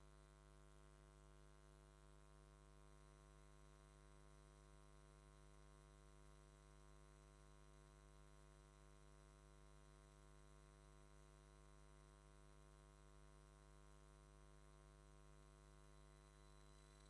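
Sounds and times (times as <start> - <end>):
faint electrical mains hum: 0.0 - 17.0
light line hiss: 15.7 - 17.0.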